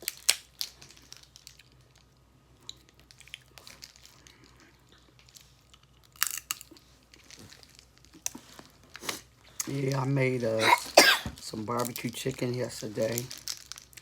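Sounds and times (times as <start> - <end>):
crab shell cracking: 0.0 - 4.2, 5.2 - 7.4
chewing: 2.6 - 9.7.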